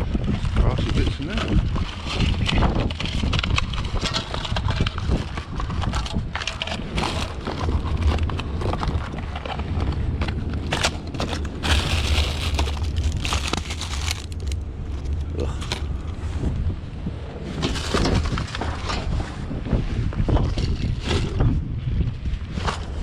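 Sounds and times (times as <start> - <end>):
low rumble: 0.0 - 23.0
hands rummaging through rubbish: 0.8 - 16.3, 17.4 - 19.3.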